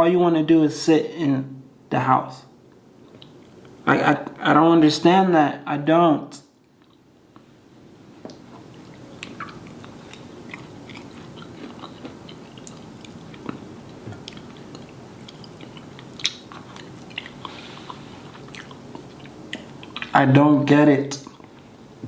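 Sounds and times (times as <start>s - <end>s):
person chewing food: 6.7s - 20.2s, 21.2s - 21.8s.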